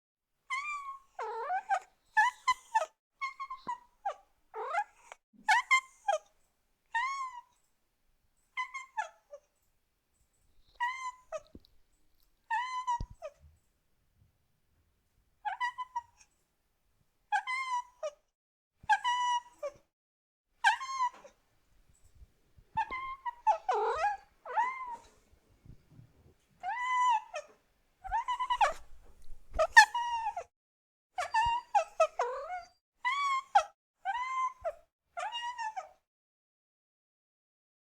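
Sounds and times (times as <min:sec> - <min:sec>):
cat meowing: 0:22.8 - 0:25.1, 0:26.6 - 0:30.5, 0:31.3 - 0:33.4.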